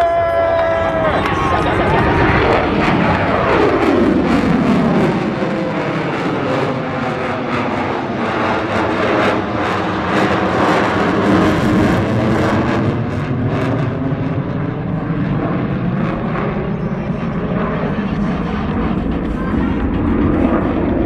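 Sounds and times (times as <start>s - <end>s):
loud jet engine noise: 0.0s - 21.0s.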